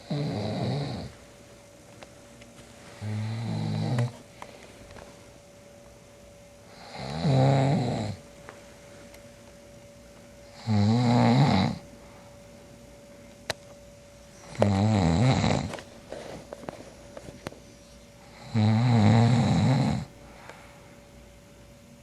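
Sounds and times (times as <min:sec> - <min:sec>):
man snoring: 0:00.0 - 0:01.1, 0:03.0 - 0:04.1, 0:06.7 - 0:08.2, 0:10.5 - 0:11.9, 0:14.5 - 0:15.7, 0:18.2 - 0:20.2
faint crackling breath: 0:20.2 - 0:21.0.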